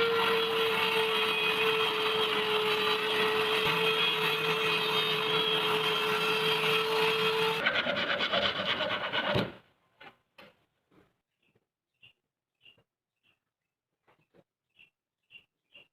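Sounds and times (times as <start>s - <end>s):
power tool motor whine: 0.0s - 7.6s.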